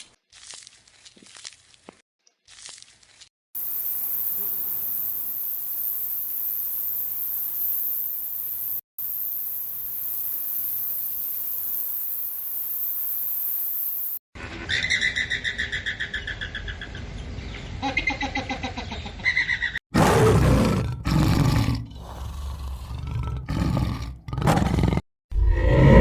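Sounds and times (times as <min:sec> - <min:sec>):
high-pitched insect buzzing: 0:03.6 - 0:14.2.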